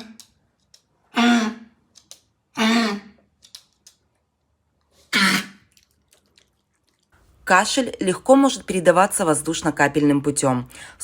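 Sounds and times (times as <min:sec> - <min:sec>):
dog coughing harshly: 0:05.1 - 0:05.6.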